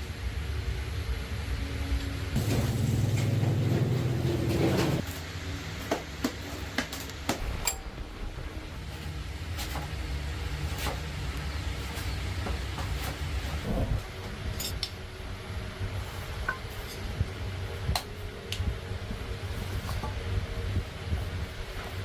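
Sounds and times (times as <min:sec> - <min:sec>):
machine motor humming: 0:02.4 - 0:05.0.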